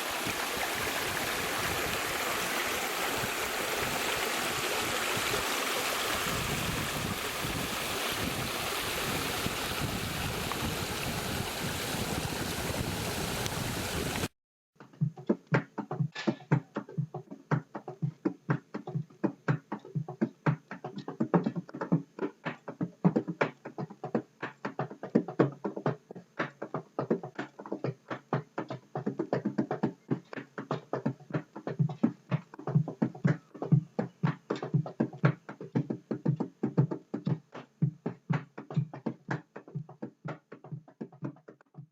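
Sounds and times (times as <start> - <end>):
waterfall roaring: 0.0 - 14.3
fast percussive music: 14.8 - 41.9.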